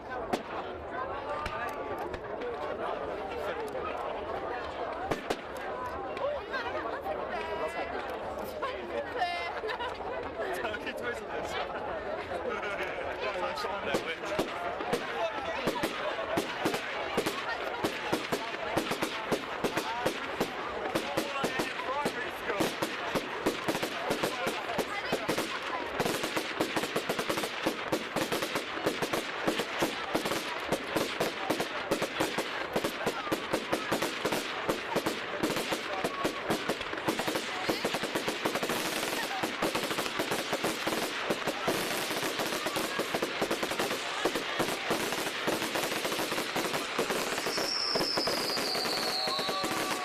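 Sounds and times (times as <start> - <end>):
fireworks crackling bangs: 4.7 - 6.3, 13.8 - 50.0
falling firework whistle: 47.1 - 50.0.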